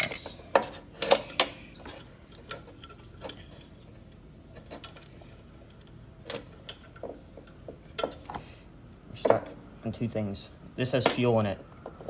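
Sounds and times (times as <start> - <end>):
clicks and taps of metal parts: 11.0 - 11.3.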